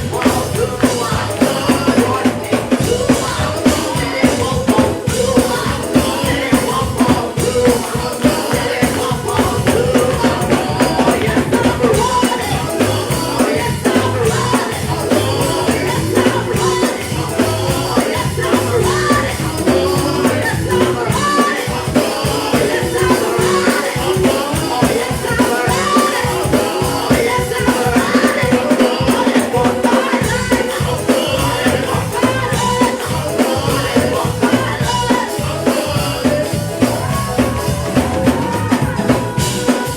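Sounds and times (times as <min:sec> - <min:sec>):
gospel band playing: 0:00.0 - 0:39.9
voices singing: 0:00.0 - 0:39.9.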